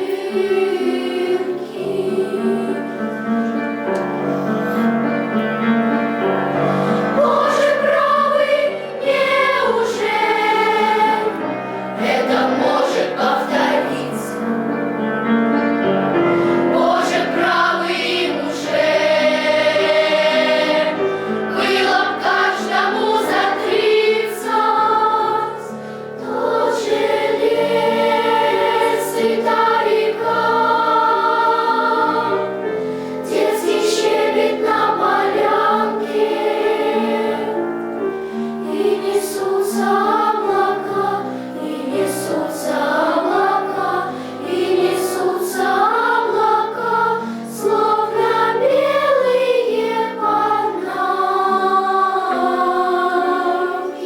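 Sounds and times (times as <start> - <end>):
children's choir singing: 0.0 - 14.8, 15.8 - 54.0
piano accompaniment: 0.0 - 54.0.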